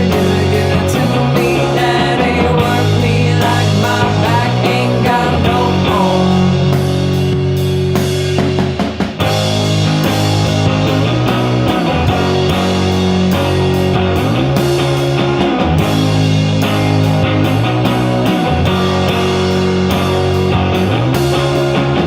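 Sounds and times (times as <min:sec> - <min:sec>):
rock music with electric guitars: 0:00.0 - 0:22.0.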